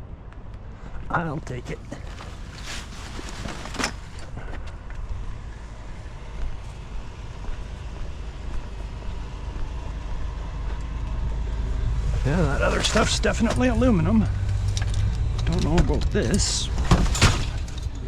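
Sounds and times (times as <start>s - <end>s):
van engine idling: 3.9s - 18.0s.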